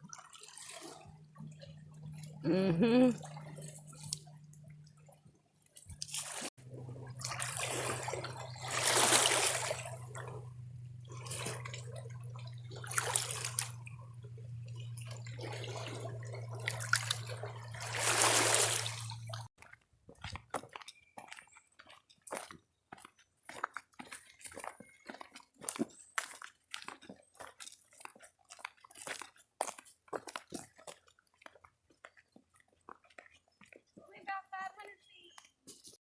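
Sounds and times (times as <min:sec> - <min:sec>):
water trickling and sloshing: 0:00.0 - 0:34.0
low hum: 0:06.6 - 0:19.5.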